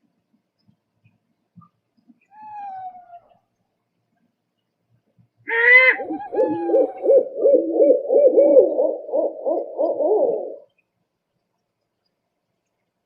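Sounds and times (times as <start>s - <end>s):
owl hooting: 5.5s - 10.7s.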